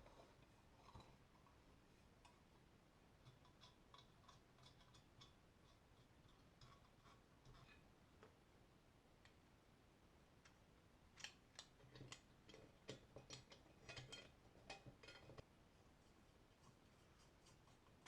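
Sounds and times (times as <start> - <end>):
light clicks of metal parts: 3.2 - 8.4, 10.4 - 15.5.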